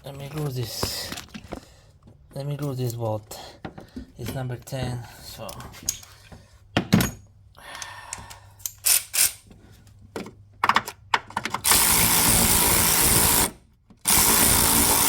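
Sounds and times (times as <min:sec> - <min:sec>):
power drill running: 0:11.6 - 0:15.0.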